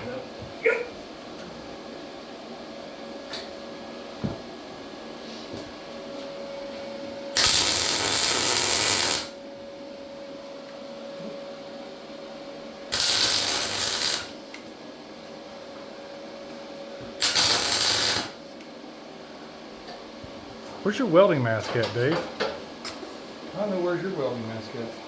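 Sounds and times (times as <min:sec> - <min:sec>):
welder crackling hiss: 0:07.3 - 0:09.4, 0:12.9 - 0:14.4, 0:17.2 - 0:18.4.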